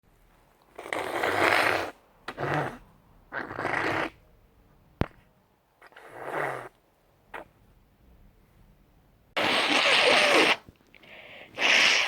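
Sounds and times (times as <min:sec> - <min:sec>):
breath forced through congested nose: 0:09.4 - 0:12.0.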